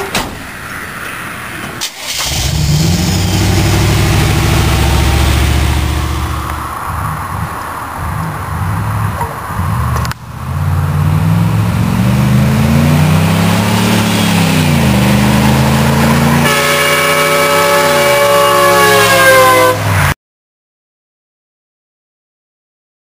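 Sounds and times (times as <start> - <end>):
truck engine driving by: 0.0 - 20.2
train horns multi-note chord: 16.1 - 20.1.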